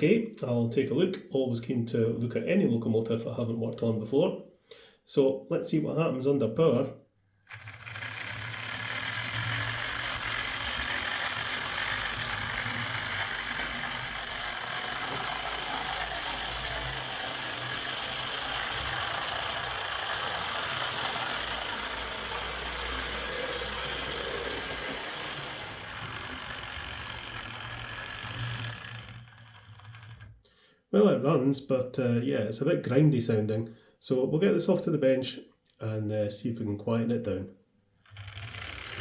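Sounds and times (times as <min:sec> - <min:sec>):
model train motor whirring: 0:07.4 - 0:30.4, 0:38.0 - 0:39.0.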